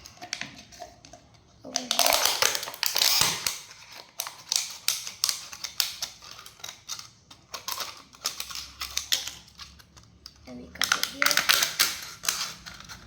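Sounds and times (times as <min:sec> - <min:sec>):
plastic being cut: 0:01.8 - 0:10.0, 0:10.8 - 0:13.0.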